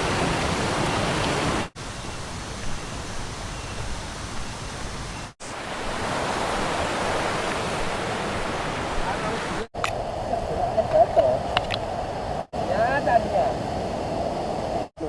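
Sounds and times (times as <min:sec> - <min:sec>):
river water rushing: 0:00.0 - 0:10.6.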